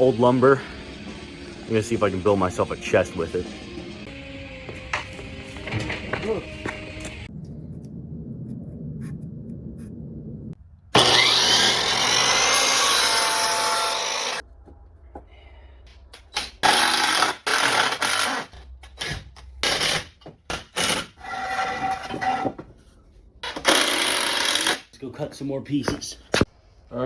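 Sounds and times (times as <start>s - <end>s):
power tool working wood: 11.0s - 14.4s.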